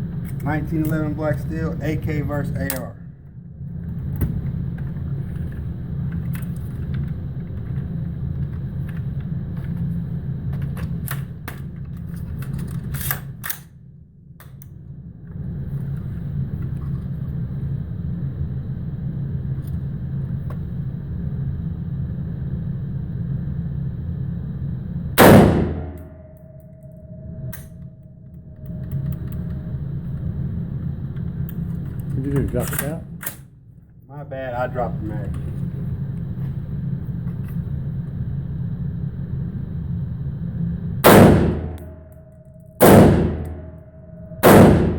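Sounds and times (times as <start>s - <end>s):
steady low rumble: 0.0s - 10.6s, 13.8s - 44.9s
rifle shot: 25.2s - 26.2s, 41.0s - 42.0s, 42.8s - 43.8s, 44.4s - 44.9s.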